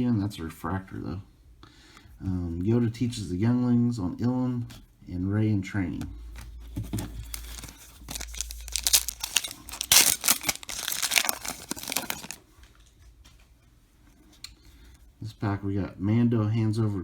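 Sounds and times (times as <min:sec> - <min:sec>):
foil wrapper tearing and crinkling: 0:07.2 - 0:12.4.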